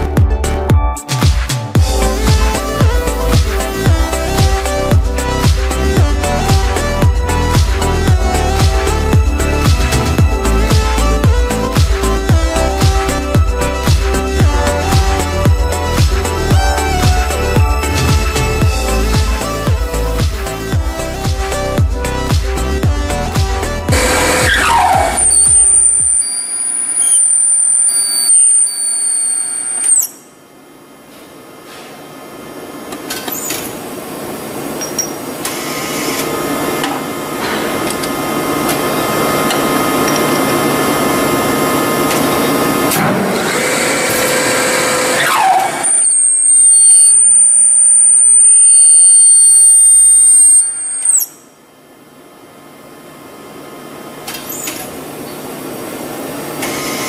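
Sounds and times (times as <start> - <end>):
high steady machine whine: 1.8 - 57.0
rush of mechanical noise: 23.9 - 30.2, 33.9 - 51.4, 54.4 - 57.0.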